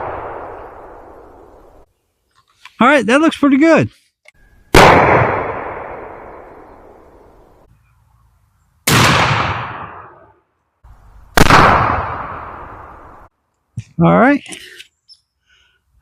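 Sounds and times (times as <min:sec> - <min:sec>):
shotgun shots with echo: 0:04.7 - 0:06.4, 0:08.9 - 0:10.2, 0:11.4 - 0:12.6.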